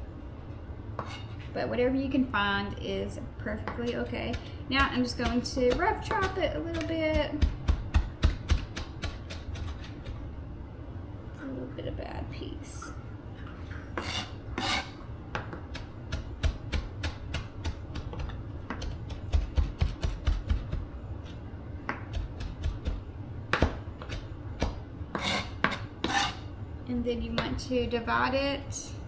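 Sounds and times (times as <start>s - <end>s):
knife scraping board: 1.0s - 1.5s, 14.0s - 15.0s, 25.1s - 26.4s
knife chopping on cutting board: 21.9s - 26.4s.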